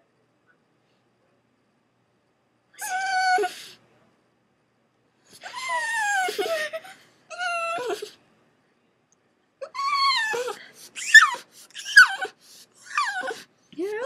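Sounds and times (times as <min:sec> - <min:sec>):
dog whining: 0:02.8 - 0:03.8, 0:05.3 - 0:08.2, 0:09.6 - 0:13.5.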